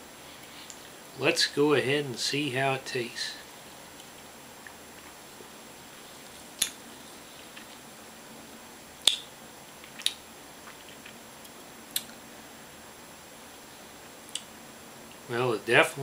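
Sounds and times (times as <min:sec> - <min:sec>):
wet mouth clicks and lip smacks: 0:09.8 - 0:12.2.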